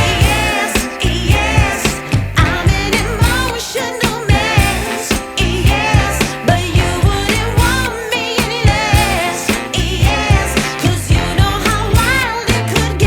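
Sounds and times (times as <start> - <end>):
drum beat: 0.0 - 13.0
pop song female singer: 0.0 - 13.0.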